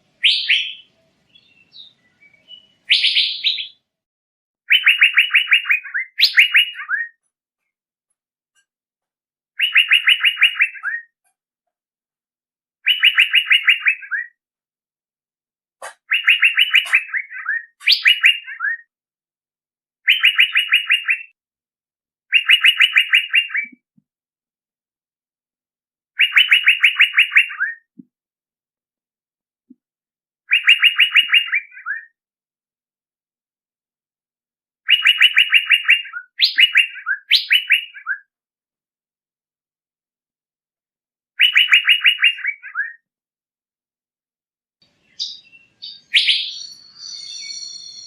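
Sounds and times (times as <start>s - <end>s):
bird calling rapid repeated notes: 0.2s - 0.9s, 1.8s - 3.8s, 4.7s - 7.2s, 9.6s - 11.2s, 12.8s - 14.4s, 15.8s - 18.9s, 20.0s - 21.4s, 22.3s - 23.8s, 26.2s - 27.9s, 30.5s - 32.2s, 34.8s - 38.3s, 41.4s - 43.0s, 45.2s - 48.0s.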